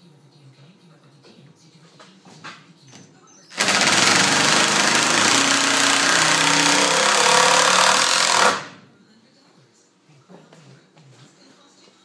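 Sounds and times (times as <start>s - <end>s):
power screwdriver driving screw: 3.6s - 8.8s.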